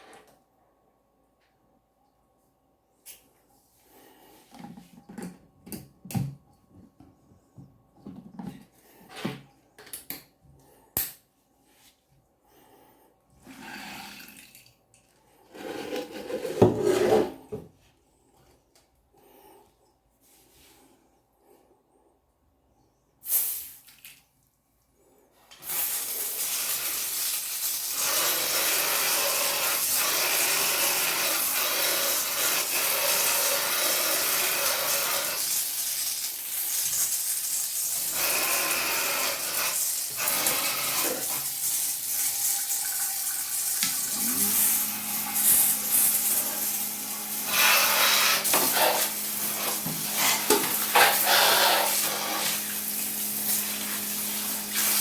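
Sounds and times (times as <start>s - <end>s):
water spraying and splashing: 25.6s - 55.0s.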